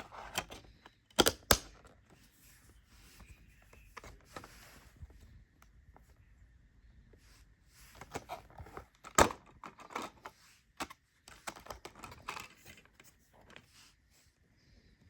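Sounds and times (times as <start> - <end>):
plastic case clicks and rustles: 0.0 - 2.0, 8.0 - 13.6
sharp plastic snap: 1.2 - 1.7.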